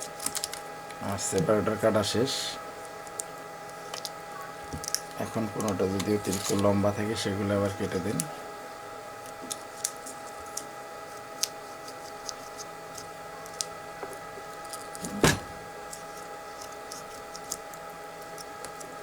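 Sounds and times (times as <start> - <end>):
steady background hum: 0.0 - 19.0
scissors snipping: 9.4 - 13.7, 15.9 - 18.9.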